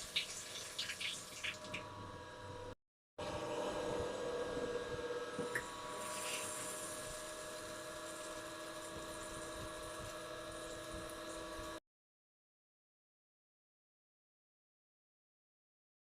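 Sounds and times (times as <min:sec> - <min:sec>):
steady hum: 0:01.3 - 0:11.8.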